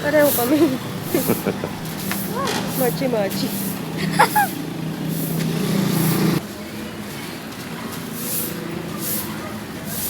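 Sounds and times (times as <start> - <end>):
vehicle engine humming: 0.0 - 6.4
high hissing swishes: 1.1 - 6.3.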